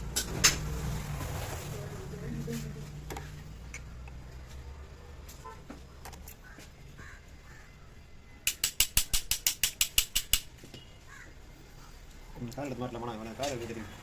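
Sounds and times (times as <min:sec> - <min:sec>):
ratchet wrench clicking: 0:08.5 - 0:10.5.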